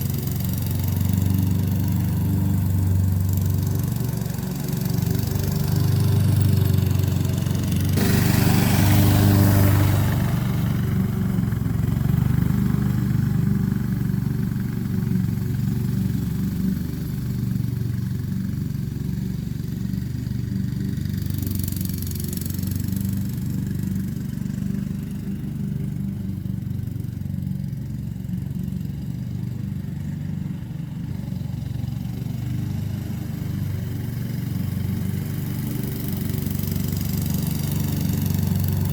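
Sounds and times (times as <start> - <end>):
lawn mower running: 0.0 - 38.9.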